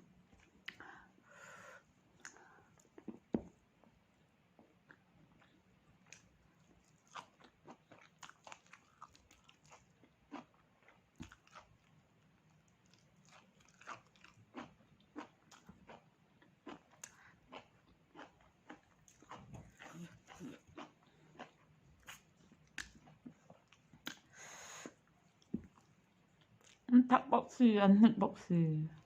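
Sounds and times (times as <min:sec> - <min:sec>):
chewing and biting food: 0:04.8 - 0:24.3.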